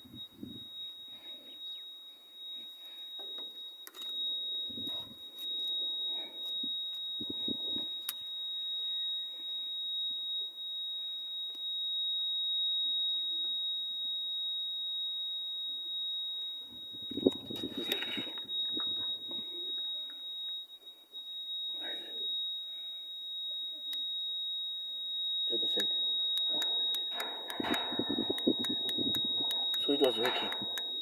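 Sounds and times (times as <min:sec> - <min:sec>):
low voices: 0:25.5 - 0:31.0
high-pitched electronic tone: 0:25.6 - 0:31.0.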